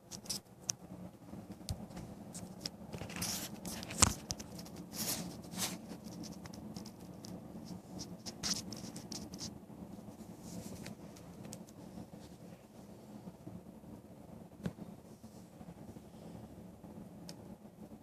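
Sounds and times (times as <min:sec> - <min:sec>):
rustling and scratching: 0:00.0 - 0:00.6, 0:01.5 - 0:13.3.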